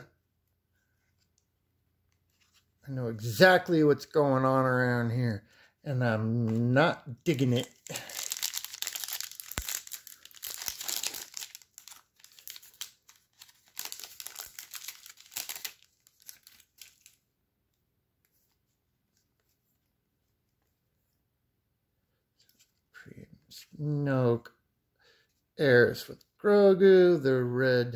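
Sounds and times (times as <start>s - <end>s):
foil wrapper tearing and crinkling: 7.3s - 17.2s.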